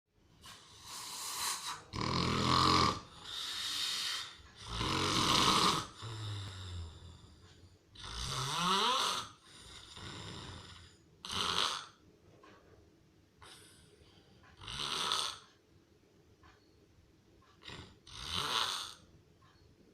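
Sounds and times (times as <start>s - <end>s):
person snoring loudly: 0.6s - 7.3s, 8.0s - 12.0s, 14.6s - 15.4s, 17.6s - 19.0s.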